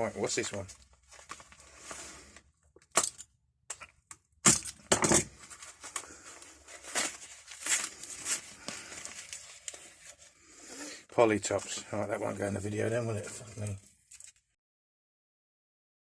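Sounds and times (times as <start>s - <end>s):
packaging torn and crumpled: 5.5s - 10.2s.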